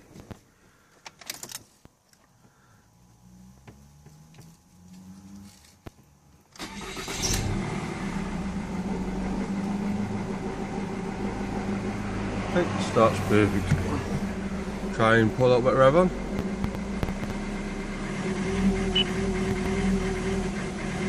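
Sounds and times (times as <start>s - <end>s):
faint hum: 0.2s - 6.6s
car engine idling: 2.2s - 21.0s.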